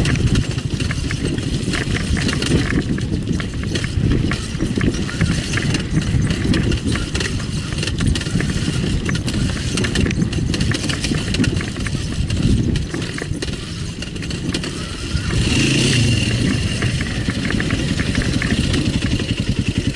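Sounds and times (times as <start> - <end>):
dirt bike engine revving: 11.9 - 19.9.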